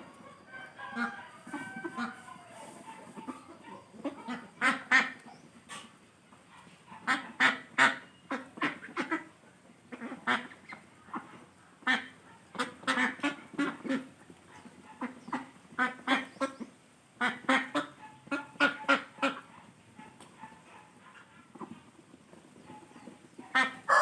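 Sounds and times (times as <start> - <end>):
bird harsh calls: 23.6 - 24.0.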